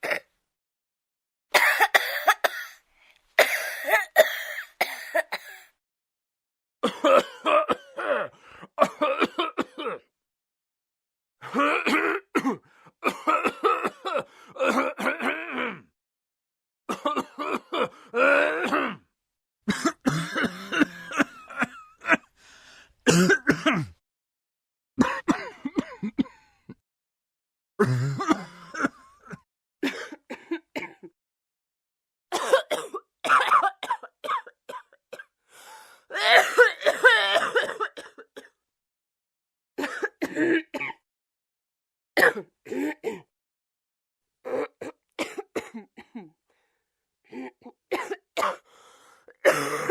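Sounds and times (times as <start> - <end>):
person coughing: 0.0 - 0.3, 1.6 - 2.8, 3.4 - 5.7, 6.8 - 10.1, 11.5 - 15.8, 16.9 - 19.0, 19.7 - 22.3, 23.1 - 24.0, 25.0 - 26.5, 27.8 - 31.2, 32.4 - 35.3, 36.1 - 38.6, 39.8 - 41.0, 42.2 - 43.3, 44.5 - 46.4, 47.3 - 48.7, 49.3 - 49.9
person clearing throat: 16.9 - 19.1, 23.1 - 24.0, 27.8 - 31.2, 32.4 - 35.3, 36.1 - 38.6, 42.2 - 43.3, 44.5 - 46.4, 49.4 - 49.9.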